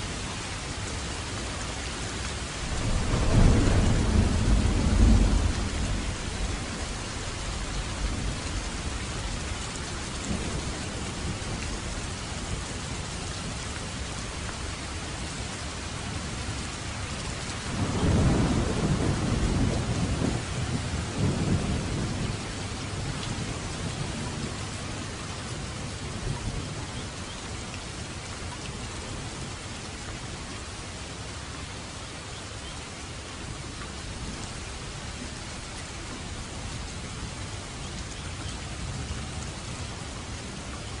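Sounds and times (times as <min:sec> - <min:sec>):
steady rain falling: 0:00.0 - 0:41.0
low rumble of thunder: 0:02.4 - 0:30.4.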